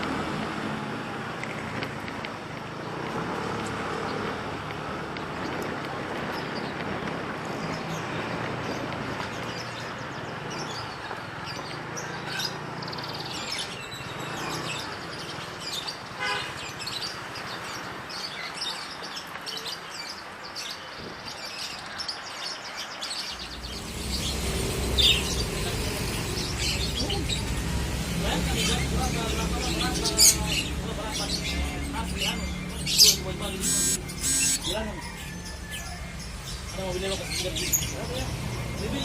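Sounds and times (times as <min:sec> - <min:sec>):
caged songbirds chirping: 0:00.0 - 0:39.0
background rumble: 0:23.3 - 0:28.4
bird trill: 0:31.3 - 0:38.0.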